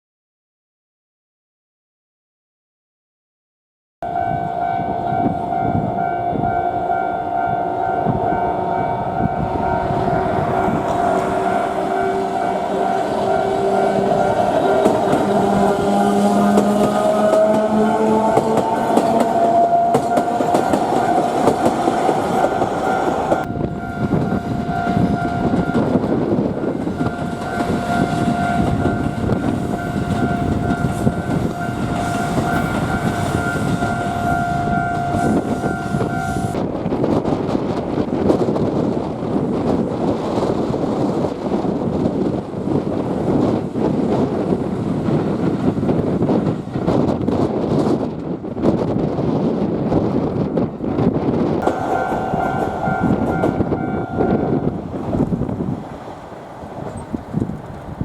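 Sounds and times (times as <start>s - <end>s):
level crossing bells ringing: 4.0s - 25.9s, 51.6s - 54.8s
train whine shifting in pitch: 4.0s - 36.6s, 51.6s - 58.0s
train rumble and wheel clatter: 4.0s - 58.0s.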